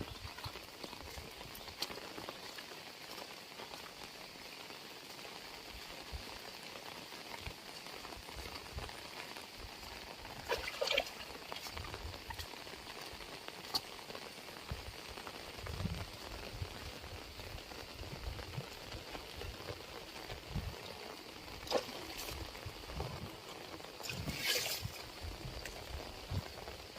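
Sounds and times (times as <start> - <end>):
heavy rain falling: 0.0 - 26.9.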